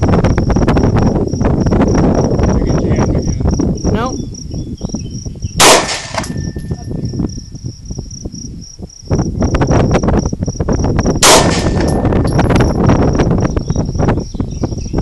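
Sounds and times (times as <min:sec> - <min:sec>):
insects chirping: 0:00.0 - 0:15.0
pistol shots: 0:05.6 - 0:06.4, 0:11.2 - 0:12.1.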